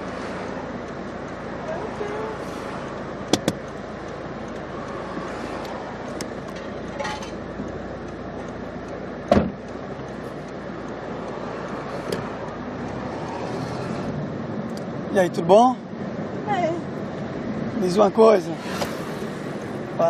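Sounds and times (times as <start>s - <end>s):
street traffic noise: 0.0s - 20.0s
sharp clicks: 2.8s - 15.0s
heavy thump: 9.3s - 9.6s.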